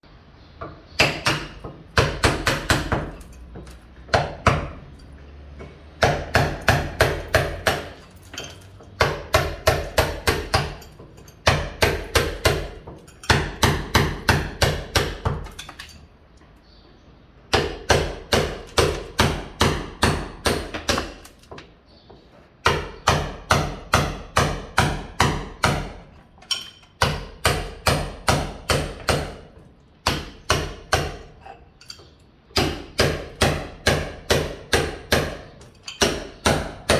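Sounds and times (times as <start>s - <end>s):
hammer striking masonry: 0.6s - 16.0s, 17.5s - 21.7s, 22.6s - 36.9s.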